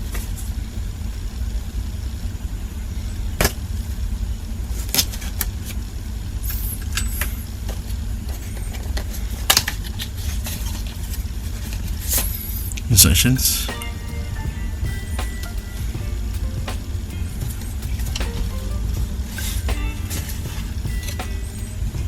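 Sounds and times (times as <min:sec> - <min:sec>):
steady low rumble: 0:12.9 - 0:22.0.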